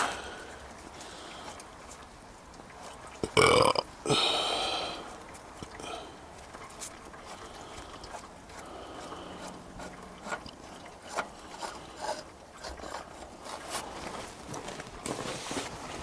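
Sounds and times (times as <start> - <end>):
faint rustle: 5.1 - 16.0
hand tools clicking and scraping: 6.6 - 15.7.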